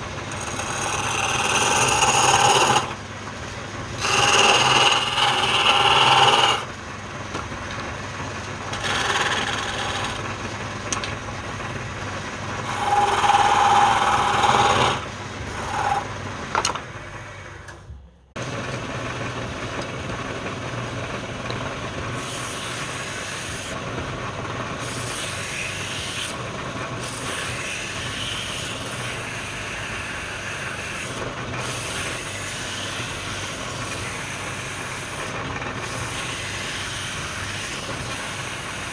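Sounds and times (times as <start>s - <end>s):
wood lathe cutting wood: 0.0s - 3.0s, 4.0s - 6.7s, 8.7s - 10.3s, 12.5s - 16.2s, 22.2s - 23.8s, 24.8s - 26.4s, 27.0s - 38.9s
steady machine hum: 0.0s - 38.9s.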